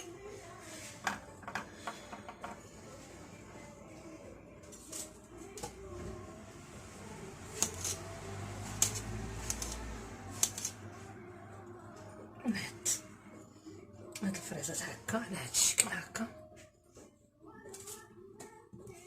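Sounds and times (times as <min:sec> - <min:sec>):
knife slicing strawberries: 0:07.5 - 0:10.8.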